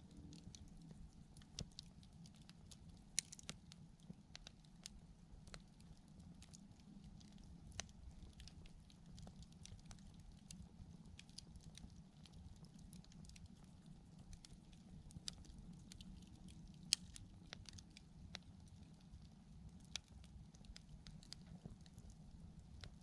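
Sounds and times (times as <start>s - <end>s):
campfire crackling and popping: 0.0s - 23.0s
low rumble of flames: 0.0s - 23.0s.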